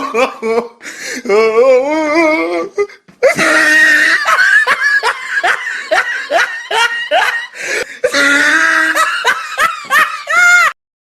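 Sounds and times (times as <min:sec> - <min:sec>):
person laughing loudly: 0:00.0 - 0:00.8, 0:03.2 - 0:10.8.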